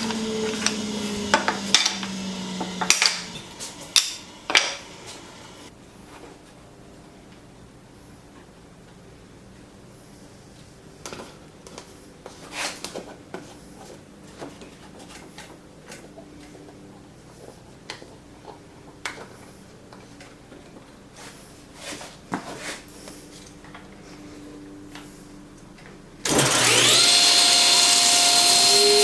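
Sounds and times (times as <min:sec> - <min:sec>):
wooden parts knocking and clattering: 0:00.0 - 0:05.3
faint steady hum: 0:00.0 - 0:29.0.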